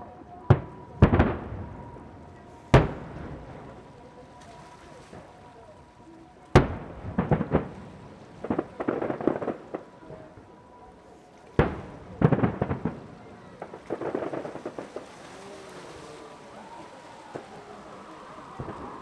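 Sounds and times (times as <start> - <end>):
firework bangs: 0.5 - 4.0, 6.6 - 10.0, 11.6 - 15.3
firework crackling: 0.5 - 5.5, 6.5 - 10.4, 11.6 - 19.0.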